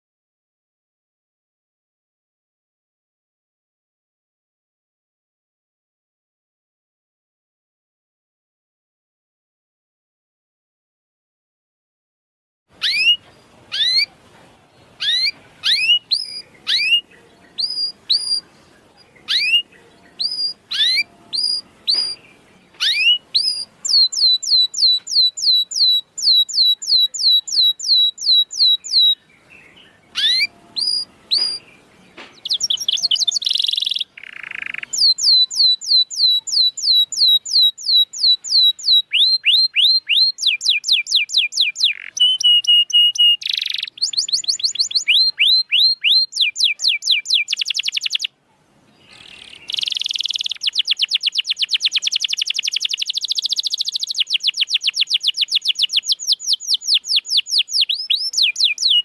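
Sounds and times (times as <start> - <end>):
canary singing: 12.7 - 59.0.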